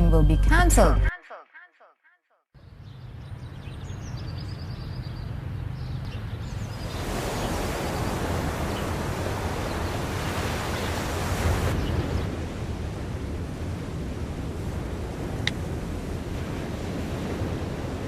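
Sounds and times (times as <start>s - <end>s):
wind on microphone: 3.4s - 18.0s
ocean surf on a beach: 6.2s - 18.0s.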